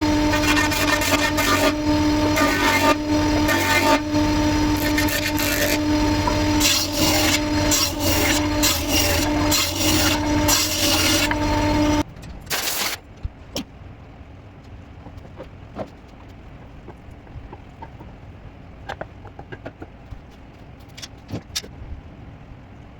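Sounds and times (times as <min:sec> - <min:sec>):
power tool grinding wood: 0:00.0 - 0:12.0.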